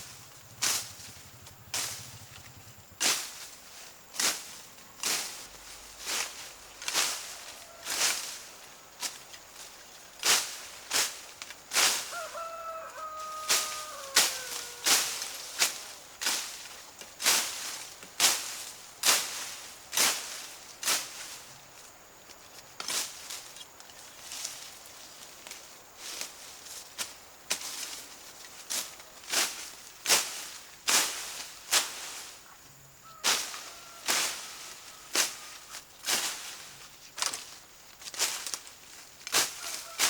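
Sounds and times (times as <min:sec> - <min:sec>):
sharp crunching strokes: 0:00.5 - 0:21.7, 0:25.5 - 0:40.0
rooster crowing: 0:07.2 - 0:08.2, 0:11.9 - 0:16.0, 0:33.0 - 0:35.7, 0:39.6 - 0:40.0.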